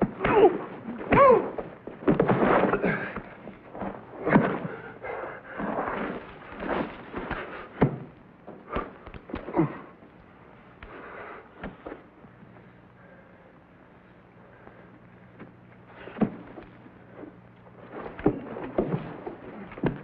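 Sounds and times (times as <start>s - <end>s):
scuffling: 0.0s - 12.7s.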